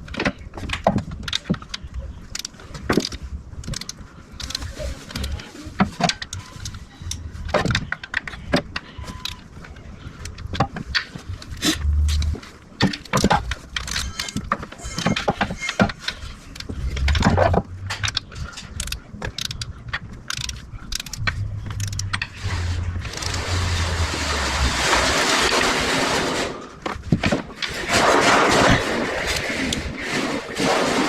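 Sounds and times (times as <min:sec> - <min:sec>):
steady whirring: 0:16.6 - 0:26.6
socket ratchet clicking: 0:18.0 - 0:22.3.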